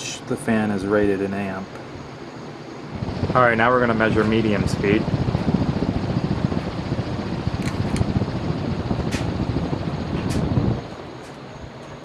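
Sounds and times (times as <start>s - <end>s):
ceiling fan airflow rumble: 0.0s - 12.0s
sharp clicks: 7.6s - 8.1s.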